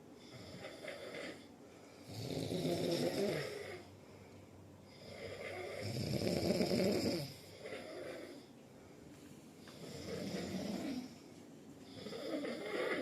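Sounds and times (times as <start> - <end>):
person snoring: 0.2 - 3.9, 4.9 - 8.5, 9.7 - 11.2, 11.8 - 13.0.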